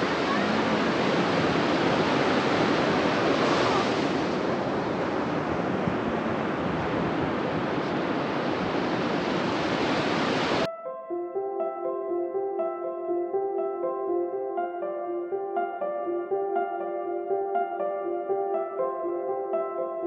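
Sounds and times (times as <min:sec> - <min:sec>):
ocean waves washing onto beach: 0:00.0 - 0:10.7
wind on microphone: 0:00.0 - 0:10.7.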